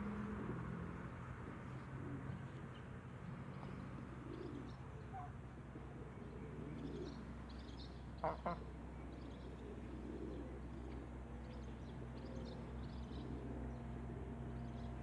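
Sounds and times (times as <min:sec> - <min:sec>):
chickens clucking softly: 0:08.2 - 0:11.1.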